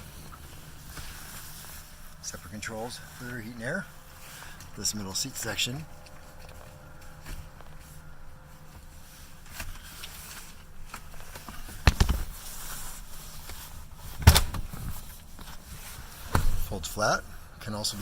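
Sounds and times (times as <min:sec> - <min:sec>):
car seat clunking: 0:08.8 - 0:16.7.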